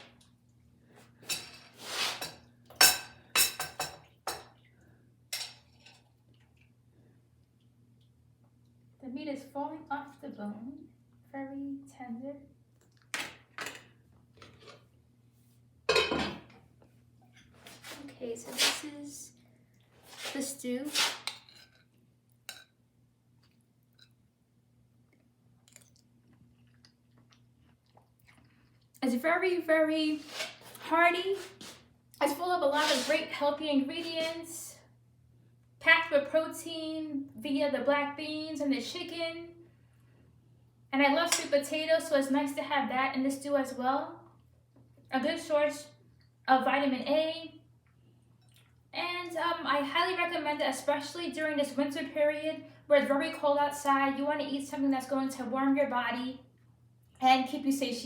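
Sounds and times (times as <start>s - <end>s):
low steady hum: 0.0s - 58.0s
utensil scraping through stew: 1.6s - 2.4s, 20.0s - 21.6s, 30.2s - 31.8s, 32.7s - 33.3s
faint chewing: 25.1s - 29.0s.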